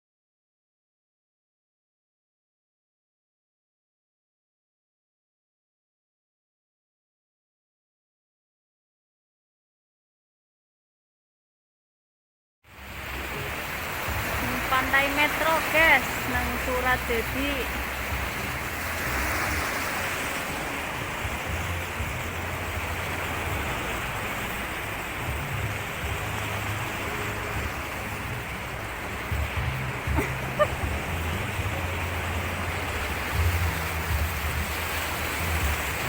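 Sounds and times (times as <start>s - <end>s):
surf washing onto beach: 12.7s - 36.0s.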